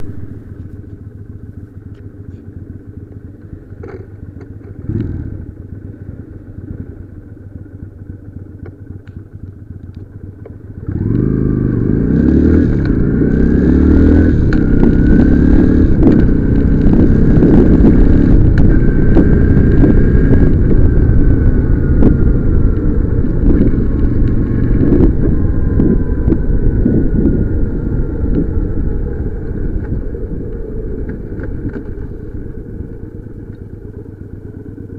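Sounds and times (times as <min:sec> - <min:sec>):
motorcycle engine accelerating: 0:00.0 - 0:34.9.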